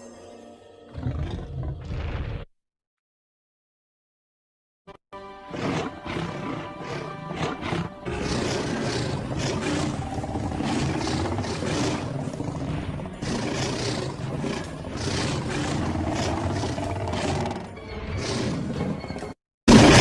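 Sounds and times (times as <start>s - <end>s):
creature growls and roars: 1.0s - 2.5s, 5.5s - 19.0s.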